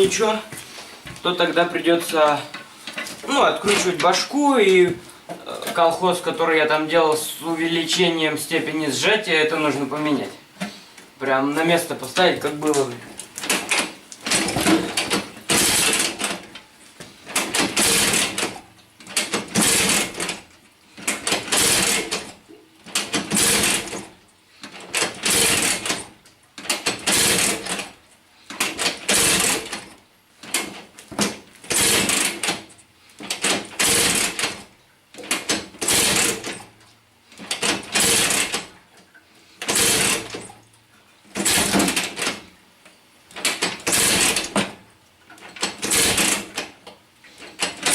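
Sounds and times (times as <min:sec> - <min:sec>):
scooter engine kick-start attempts: 0:13.4 - 0:16.5, 0:17.3 - 0:20.4, 0:21.0 - 0:24.1, 0:24.7 - 0:34.6, 0:35.2 - 0:36.7, 0:37.4 - 0:38.7, 0:39.6 - 0:40.5, 0:41.4 - 0:42.5, 0:43.3 - 0:44.8, 0:45.4 - 0:46.7, 0:47.4 - 0:47.9.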